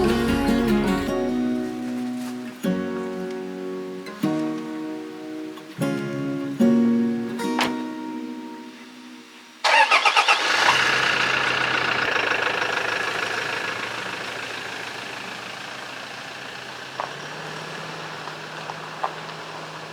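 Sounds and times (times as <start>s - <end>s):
car engine cranking: 0.0s - 1.8s, 9.6s - 19.9s
car engine idling: 0.0s - 2.4s, 9.6s - 19.9s.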